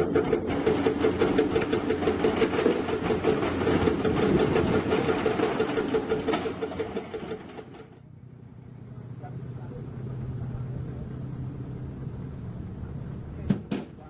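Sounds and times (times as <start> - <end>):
excavator diesel engine clattering: 0.0 - 8.1.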